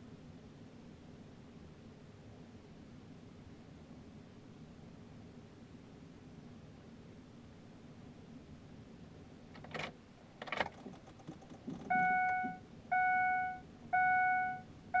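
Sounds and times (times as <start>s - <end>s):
car warning chime beeping: 11.7s - 15.0s.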